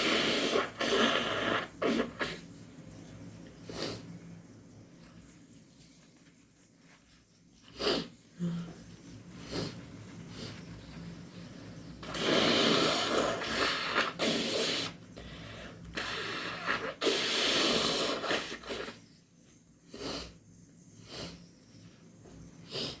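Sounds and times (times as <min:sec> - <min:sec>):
nose snorts: 0:00.0 - 0:02.4, 0:07.7 - 0:08.1, 0:12.0 - 0:15.0, 0:16.0 - 0:19.0
person blowing nose: 0:00.0 - 0:02.4, 0:07.7 - 0:08.1, 0:12.0 - 0:15.0, 0:16.0 - 0:19.0.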